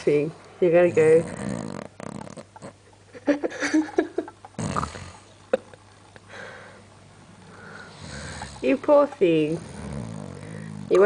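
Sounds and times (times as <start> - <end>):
man snoring: 1.1 - 2.5, 4.6 - 5.2, 7.8 - 8.7, 9.6 - 11.0.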